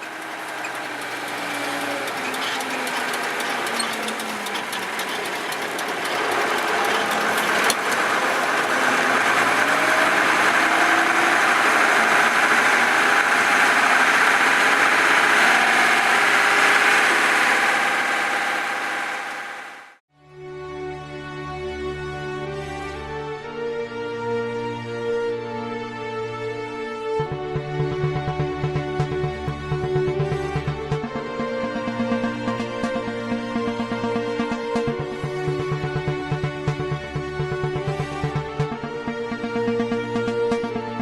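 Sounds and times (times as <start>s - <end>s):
tractor diesel engine under load: 0.0s - 20.0s, 33.7s - 39.0s.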